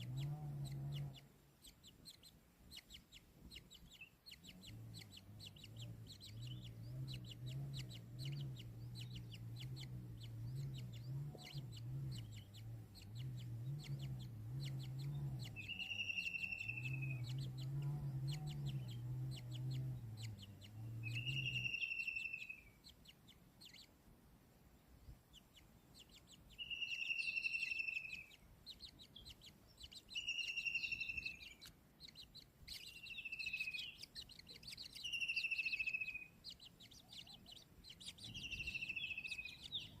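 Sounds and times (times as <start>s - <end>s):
low bird clucking: 0.0s - 24.0s, 25.3s - 40.0s
short high bird calls: 15.5s - 17.4s, 21.0s - 22.8s, 26.6s - 40.0s.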